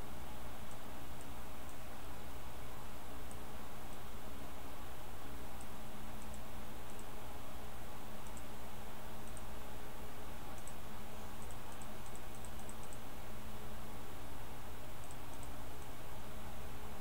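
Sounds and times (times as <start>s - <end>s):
electrical hum and hiss: 0.0s - 17.0s
computer mouse clicks: 0.6s - 1.8s, 3.2s - 4.1s, 5.6s - 7.1s, 8.2s - 8.5s, 9.2s - 9.5s, 10.5s - 10.8s, 11.4s - 13.0s, 15.0s - 15.9s.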